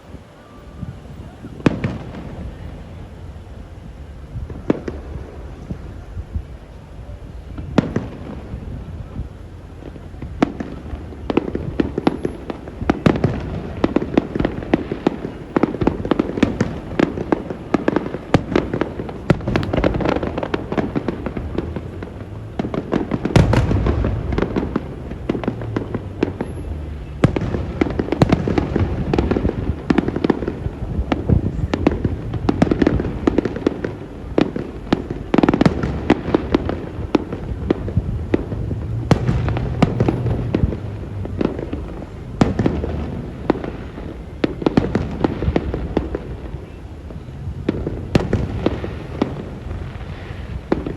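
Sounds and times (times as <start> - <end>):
fireworks bangs and crackling: 0.0 - 50.9
deep firework boom: 7.4 - 46.6.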